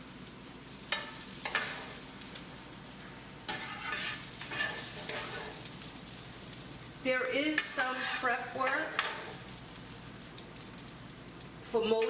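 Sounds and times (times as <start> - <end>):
onions sizzling in a frying pan: 0.0 - 12.0
spoon scraping through onions: 0.9 - 2.1, 3.4 - 5.8, 7.5 - 9.5.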